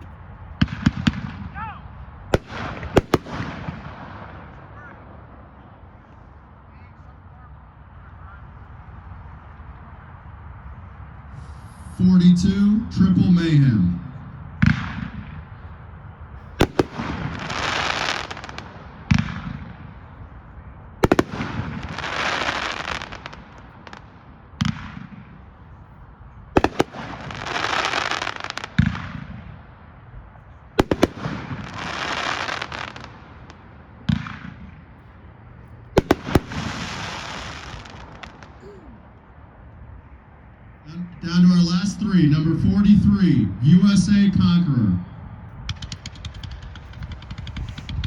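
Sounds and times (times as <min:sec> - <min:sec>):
firework shots bangs: 0:00.0 - 0:05.4, 0:14.5 - 0:15.6, 0:16.4 - 0:20.1, 0:21.0 - 0:25.6, 0:26.6 - 0:29.8, 0:30.8 - 0:35.1, 0:36.0 - 0:38.8, 0:45.6 - 0:48.0
firework noisy burst: 0:26.6 - 0:28.8, 0:36.0 - 0:38.6.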